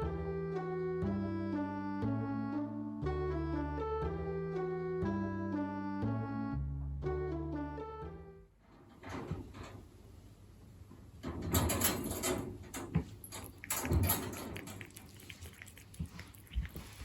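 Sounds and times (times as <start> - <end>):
cat chewing wet food: 13.4 - 17.0.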